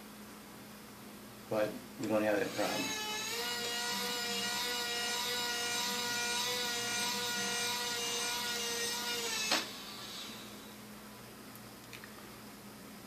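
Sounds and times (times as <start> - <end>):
small electric motor whining: 2.4 - 10.8
motor stopping click: 9.3 - 10.4.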